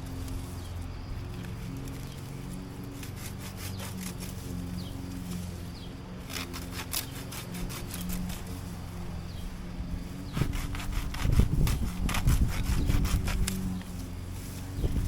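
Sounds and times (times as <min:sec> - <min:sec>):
lawn mower droning: 0:00.0 - 0:15.0
crackling clicks: 0:00.1 - 0:02.3, 0:13.4 - 0:14.0.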